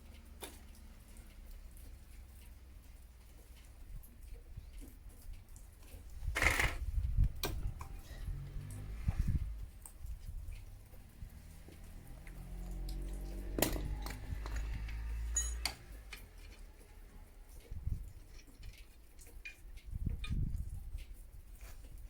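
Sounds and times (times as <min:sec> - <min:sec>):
metal hand tools clinking: 0:13.3 - 0:16.6.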